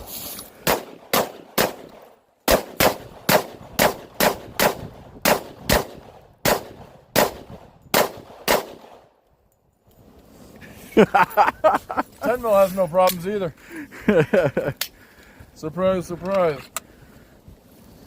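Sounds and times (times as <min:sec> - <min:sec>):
handgun firing rapidly: 0:00.6 - 0:01.9, 0:02.5 - 0:09.0.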